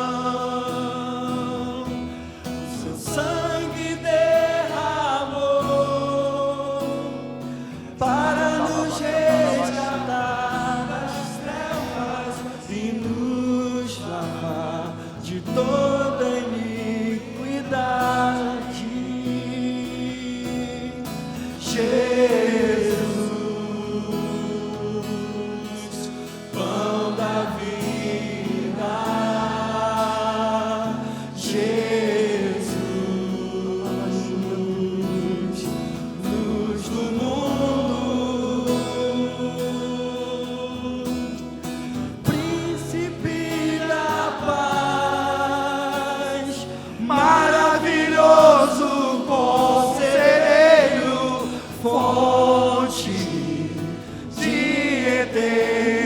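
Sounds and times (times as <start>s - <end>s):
people singing gospel: 0.0s - 56.0s.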